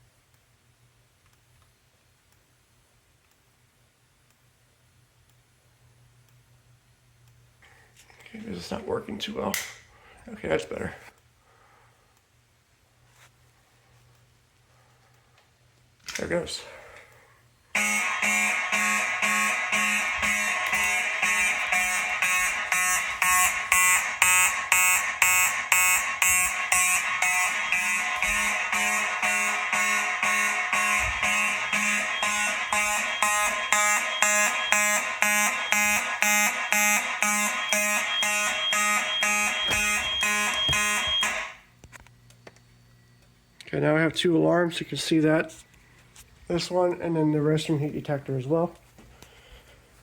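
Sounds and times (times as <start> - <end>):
fire alarm horns pulsing: 17.7 - 41.7.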